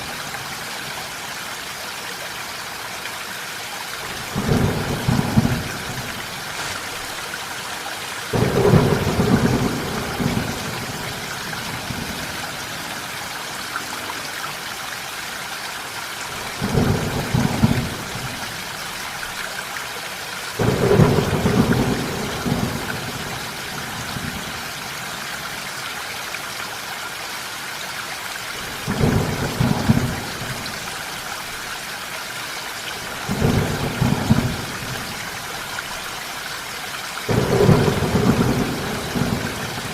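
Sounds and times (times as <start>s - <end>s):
steady rain: 0.0s - 39.9s
thunder rumbling: 4.2s - 7.2s, 8.3s - 12.5s, 16.5s - 18.6s, 20.6s - 23.6s, 37.3s - 39.9s.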